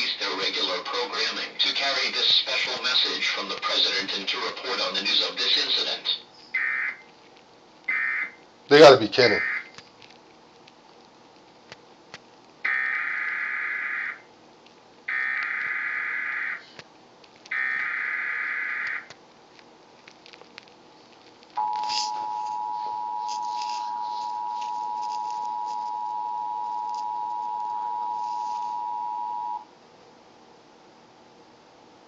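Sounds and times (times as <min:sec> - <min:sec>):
two-tone attention signal: 0:21.6 - 0:29.6.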